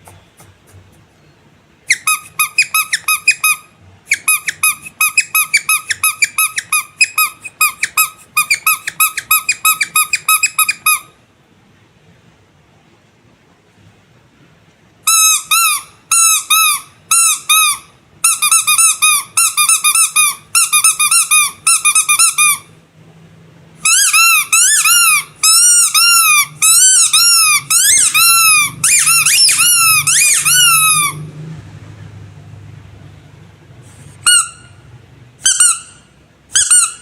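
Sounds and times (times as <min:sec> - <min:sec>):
squeaky rubber toy squeaking: 0:01.8 - 0:11.2, 0:15.0 - 0:22.8, 0:23.8 - 0:31.3, 0:34.2 - 0:34.8, 0:35.4 - 0:37.0.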